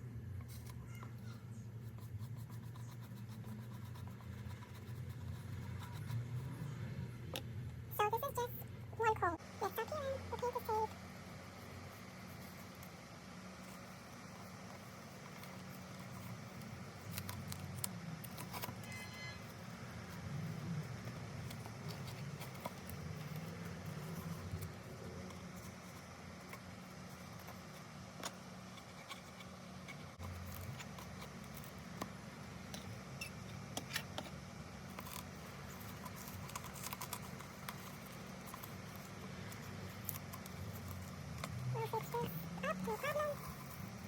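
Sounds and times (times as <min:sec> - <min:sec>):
steady low hum: 0:00.0 - 0:44.0
hands handling tape: 0:13.6 - 0:44.0.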